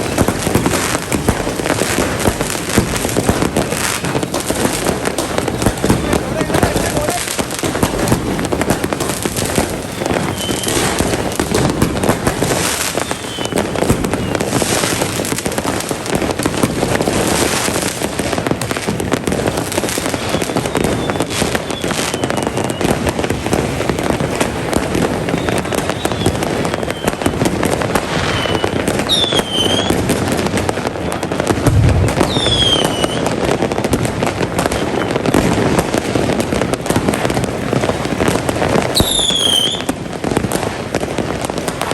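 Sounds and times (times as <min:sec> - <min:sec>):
fireworks crackling and banging: 0:00.0 - 0:41.9
falling firework whistles: 0:09.4 - 0:15.2, 0:19.7 - 0:23.2, 0:25.0 - 0:30.2, 0:31.1 - 0:33.6, 0:38.8 - 0:40.0.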